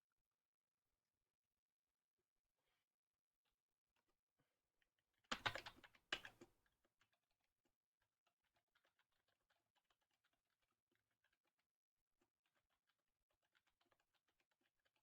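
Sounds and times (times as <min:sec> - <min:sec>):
keyboard typing: 0:05.3 - 0:06.4.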